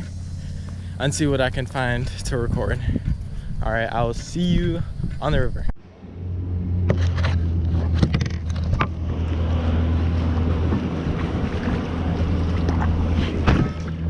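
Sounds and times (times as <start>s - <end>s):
wind rumbling on microphone: 0.0s - 14.0s
paddle splashes and knocks: 7.7s - 14.0s.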